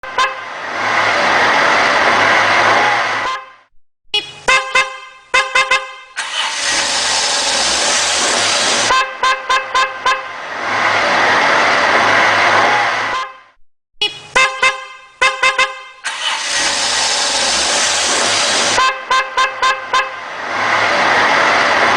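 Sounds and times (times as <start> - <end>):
car horn short toots: 0.0 - 0.4, 3.2 - 3.6, 4.2 - 7.0, 8.9 - 10.3, 13.1 - 16.8, 18.8 - 20.2
loud steady rushing noise: 0.3 - 3.3, 6.2 - 9.0, 10.0 - 13.2, 16.1 - 18.9, 19.7 - 21.9.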